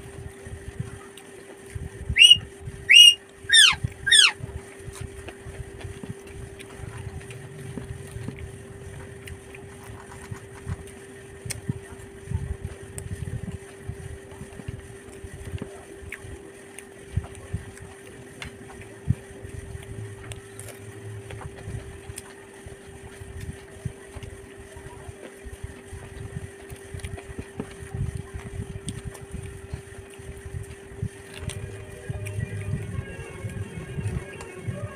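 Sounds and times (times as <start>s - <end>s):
faint steady hum: 0.0s - 34.9s
falling whistle-like calls: 2.2s - 4.4s
chewing with wet clicks: 14.5s - 19.2s, 25.8s - 32.4s.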